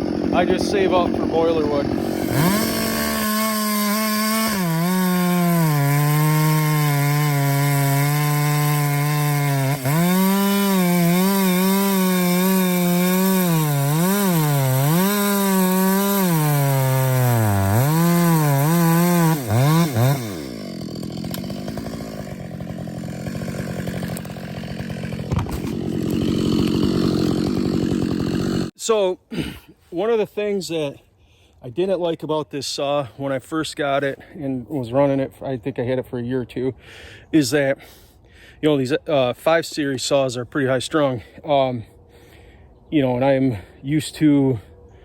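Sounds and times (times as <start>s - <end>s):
chainsaw cutting wood: 0.0s - 28.8s.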